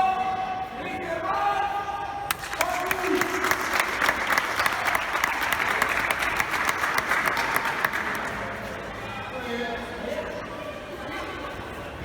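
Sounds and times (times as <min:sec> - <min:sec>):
crowd applauding: 0:02.3 - 0:08.6.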